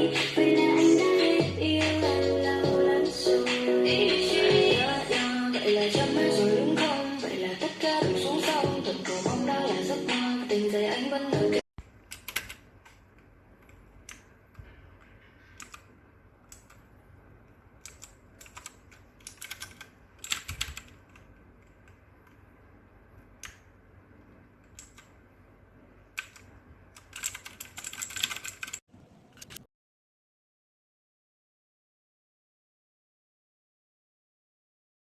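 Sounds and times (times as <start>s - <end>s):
mechanical keyboard clicky keystrokes: 17.8s - 21.3s, 26.2s - 29.6s.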